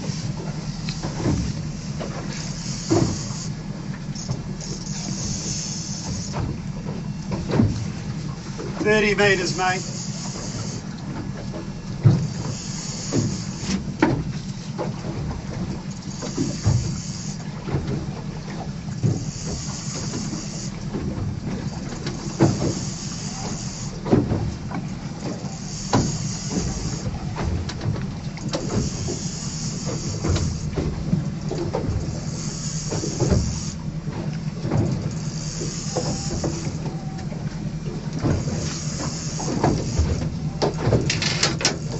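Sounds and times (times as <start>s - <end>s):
boat engine droning: 0.0s - 41.9s.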